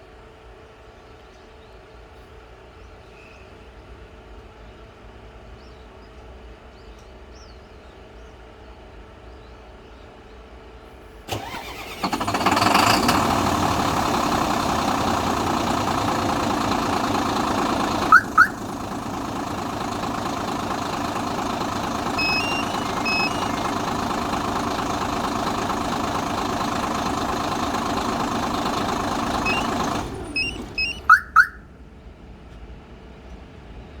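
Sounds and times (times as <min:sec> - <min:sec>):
diesel truck engine running: 0:11.3 - 0:31.7
alarm unit rising chirps: 0:18.0 - 0:18.8, 0:21.2 - 0:23.8, 0:29.4 - 0:31.6
faint beeps: 0:22.1 - 0:23.6.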